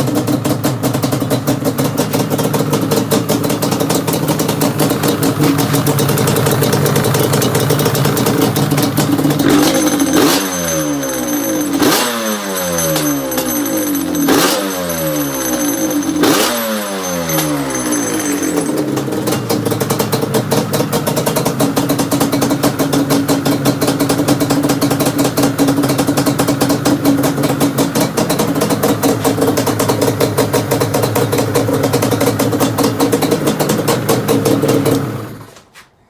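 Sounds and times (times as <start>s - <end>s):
two-stroke engine idling: 0.0s - 35.5s.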